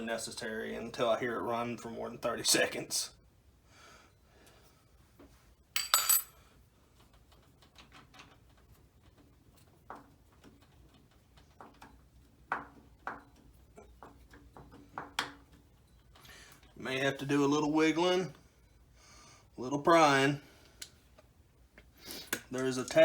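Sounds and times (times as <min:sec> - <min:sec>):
metal tools clinking and tapping: 0:05.8 - 0:06.4.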